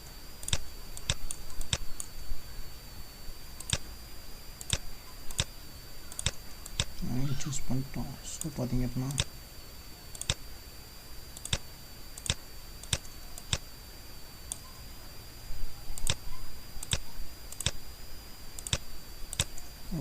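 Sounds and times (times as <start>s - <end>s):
faint high-pitched whine: 0.0s - 20.0s
computer mouse clicks: 0.4s - 2.1s, 3.6s - 3.9s, 4.6s - 5.5s, 6.1s - 7.0s, 9.1s - 9.3s, 10.1s - 10.4s, 11.3s - 13.7s, 14.5s - 14.8s, 16.0s - 17.8s, 18.6s - 19.7s.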